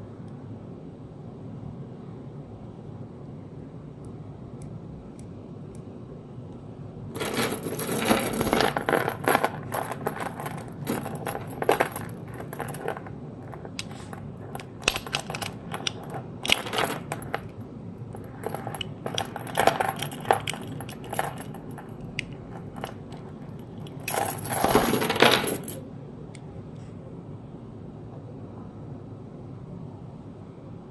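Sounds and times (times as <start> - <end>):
metal knife parts clicking and rattling: 13.6 - 17.5, 18.2 - 22.9.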